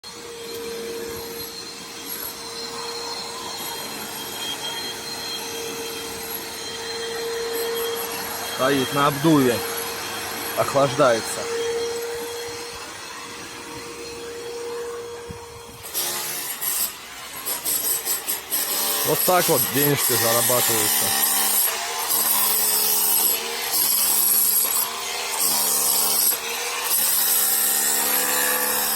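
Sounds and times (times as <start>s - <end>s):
vacuum cleaner blowing air: 0.0s - 21.2s
power tool whining in bursts: 0.1s - 28.9s.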